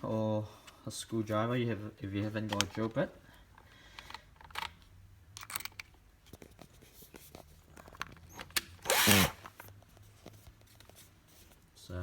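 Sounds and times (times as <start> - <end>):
hob parts clicking and rattling: 3.6 - 4.8, 5.4 - 6.5.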